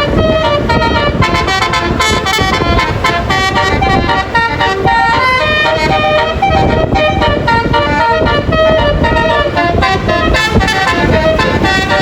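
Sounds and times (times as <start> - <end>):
musical air horn playing melody: 0.0 - 12.0
steady low rumble: 0.0 - 12.0.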